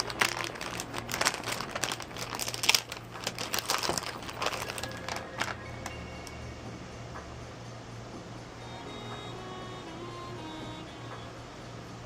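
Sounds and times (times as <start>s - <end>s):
crinkling and rustling: 0.0s - 6.0s
steady low hum: 0.0s - 12.0s.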